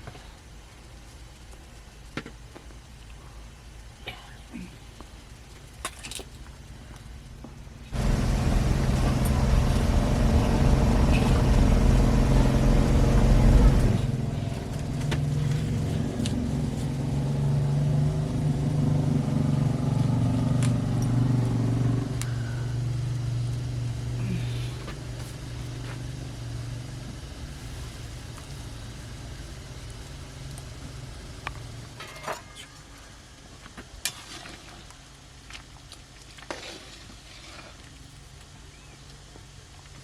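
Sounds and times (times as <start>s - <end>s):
vehicle engine running: 4.9s - 32.1s.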